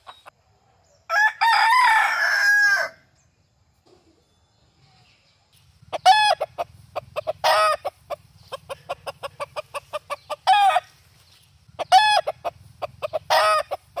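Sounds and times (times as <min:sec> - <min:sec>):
rooster clucking: 0:00.0 - 0:00.3, 0:05.8 - 0:14.0.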